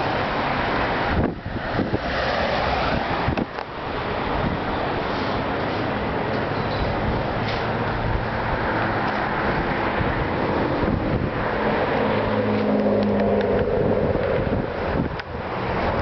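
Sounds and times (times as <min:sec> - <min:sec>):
wind buffeting microphone: 0:00.0 - 0:05.0, 0:06.8 - 0:16.0
road noise: 0:00.0 - 0:16.0.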